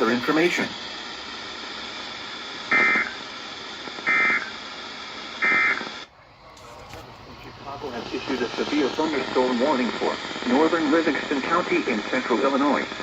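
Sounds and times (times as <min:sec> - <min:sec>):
radio hiss: 0:00.0 - 0:13.0
digital data bursts: 0:05.4 - 0:12.8.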